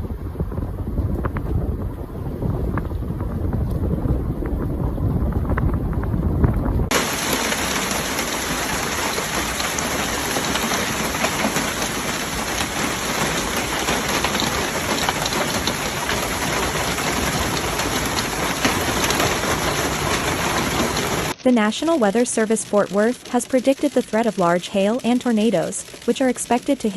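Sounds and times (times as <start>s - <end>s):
hail and heavy rain pelting: 6.9s - 26.9s.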